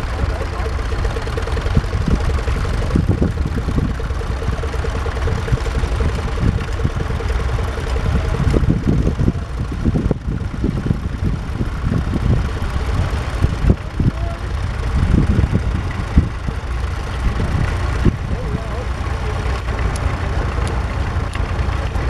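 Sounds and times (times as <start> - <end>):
thin steady note: 0.0 - 9.7
tractor engine rumbling: 0.0 - 22.0.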